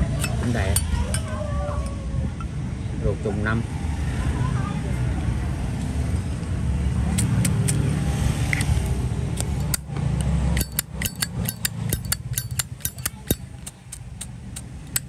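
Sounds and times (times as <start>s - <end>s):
traffic rumble: 0.0s - 15.0s
metal lighter clicking: 9.4s - 9.8s, 10.6s - 15.0s.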